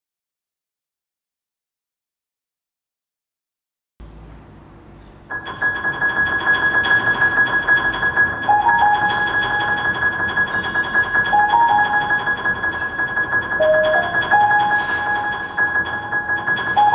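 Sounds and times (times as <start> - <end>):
instrumental music: 5.3 - 16.9.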